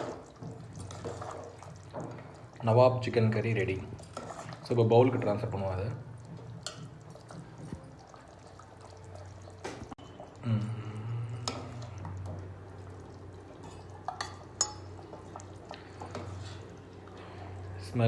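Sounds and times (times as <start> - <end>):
curry pouring and dripping: 0.0 - 18.0
spoon clinking and scraping: 13.6 - 15.0.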